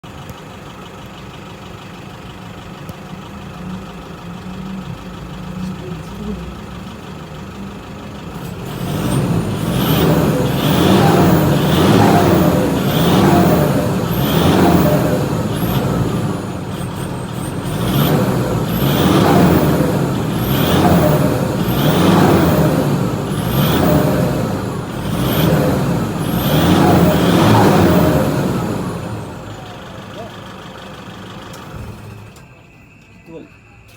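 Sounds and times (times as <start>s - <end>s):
diesel engine revving: 0.0s - 32.6s.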